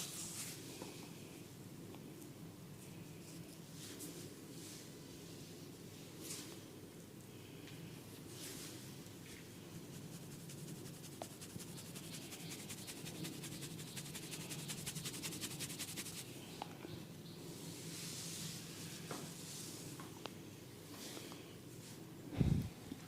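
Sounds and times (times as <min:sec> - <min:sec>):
soft rubbing: 0:09.6 - 0:16.3
scratching on hair and scalp: 0:09.7 - 0:16.3.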